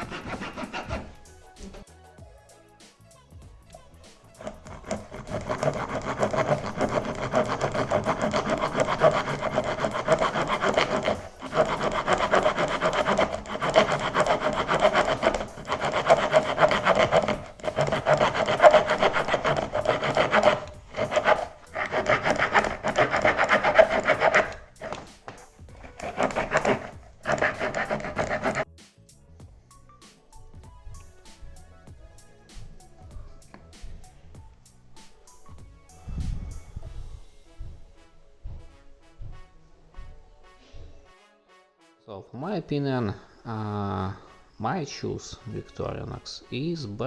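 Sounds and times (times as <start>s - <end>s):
multi-tool blade rasping on wood: 0.0s - 1.9s, 4.3s - 28.7s.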